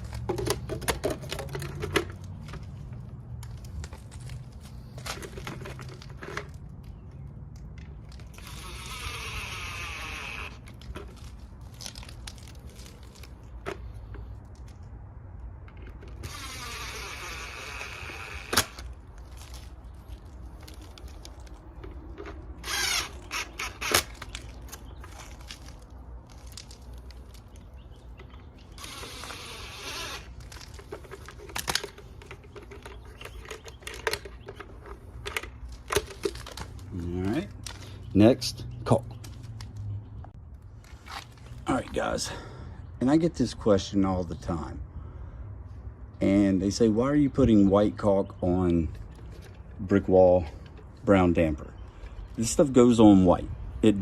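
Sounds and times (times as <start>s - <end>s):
handling clicks and knocks: 0.0s - 8.4s, 18.5s - 28.8s, 30.3s - 38.0s
power drill running: 8.4s - 10.6s, 16.2s - 18.8s, 22.6s - 23.9s, 28.8s - 30.3s.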